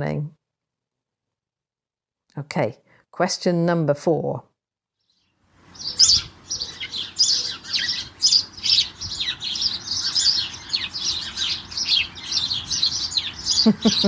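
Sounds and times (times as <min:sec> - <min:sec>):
sparrows twittering: 0:05.0 - 0:14.0.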